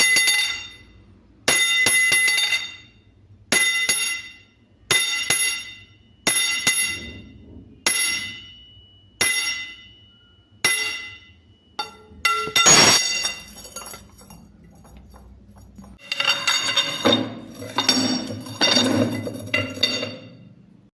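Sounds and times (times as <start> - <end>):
steel rods struck ringing: 0.0 - 14.4, 15.8 - 20.5
metal clanking together: 11.8 - 20.5.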